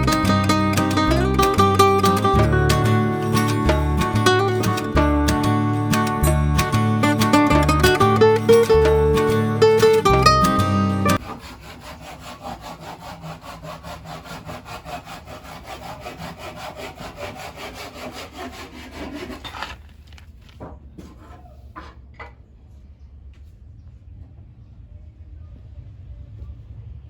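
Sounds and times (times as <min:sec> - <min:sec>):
plucked string music: 0:00.0 - 0:11.2
hand sanding wooden board: 0:00.0 - 0:19.7.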